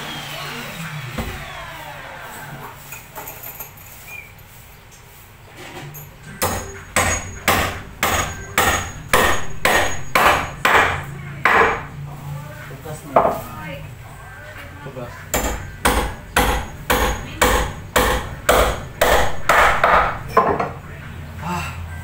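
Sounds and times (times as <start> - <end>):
hammer blows: 6.4 - 11.9.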